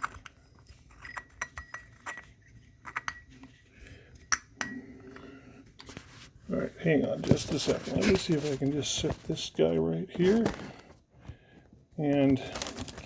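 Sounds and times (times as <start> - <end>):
small metal and glass parts clinking: 0.0 - 3.4.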